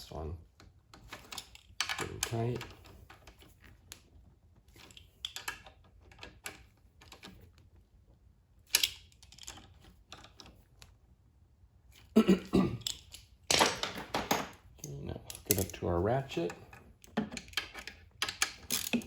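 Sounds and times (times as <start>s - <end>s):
metallic clicks of hand tools: 14.8s - 16.5s.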